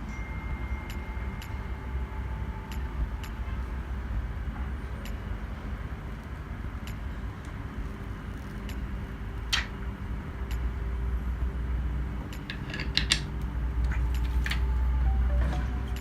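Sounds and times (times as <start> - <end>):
low machine hum: 0.0 - 16.0
tools clicking and tapping: 12.3 - 13.4.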